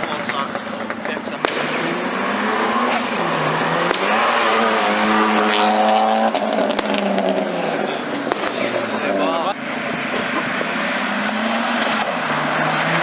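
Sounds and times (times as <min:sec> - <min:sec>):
sharp cracks: 0:00.0 - 0:08.9
car engine revving hard: 0:00.0 - 0:13.0.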